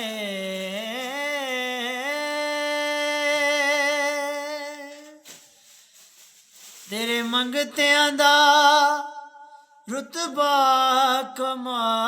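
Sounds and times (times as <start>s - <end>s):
person singing: 0.0s - 5.2s.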